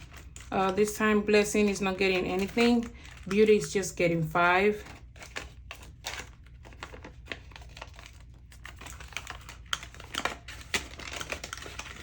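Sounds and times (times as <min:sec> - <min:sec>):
paper bills rustling: 0:00.0 - 0:12.0.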